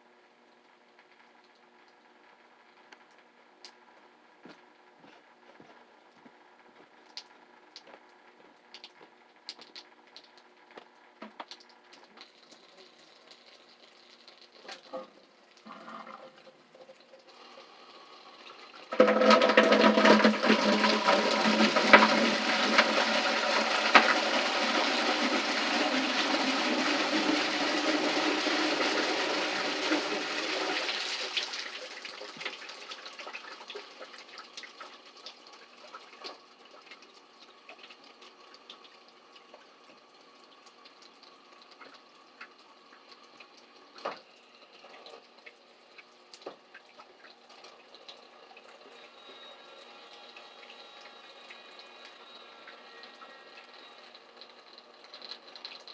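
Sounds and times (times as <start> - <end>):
water trickle and drips: 7.0 - 19.0, 30.9 - 55.9
toilet flushing: 14.6 - 36.2, 47.8 - 54.7.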